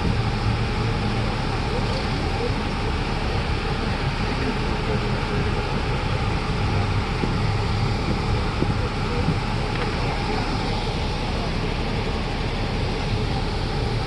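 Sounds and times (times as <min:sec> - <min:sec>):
bus engine hum: 0:00.0 - 0:14.0
road and wind noise: 0:00.0 - 0:14.0.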